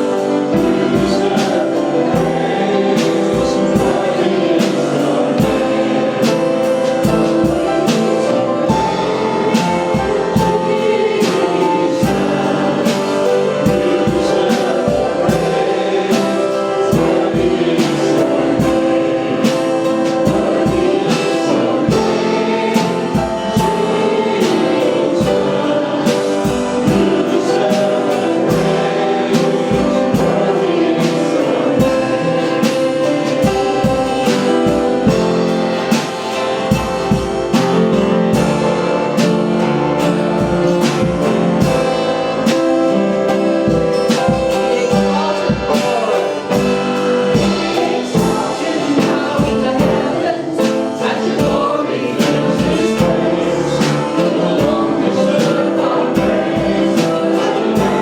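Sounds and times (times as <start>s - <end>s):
gospel worship music with singing: 0.0s - 58.0s.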